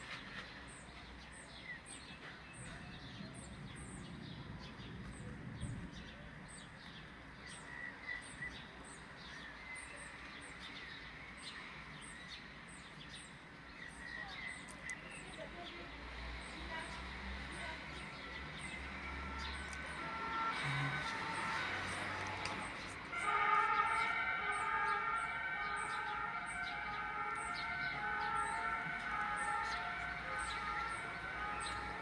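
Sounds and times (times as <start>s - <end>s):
small birds chirping: 0.1s - 23.1s.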